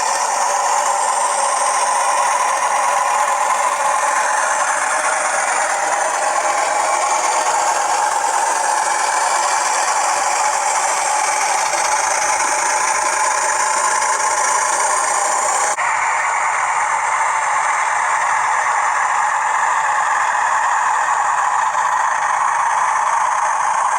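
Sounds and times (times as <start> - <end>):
rattling: 0.0 - 15.8
diesel engine sound through small speaker: 0.0 - 23.9.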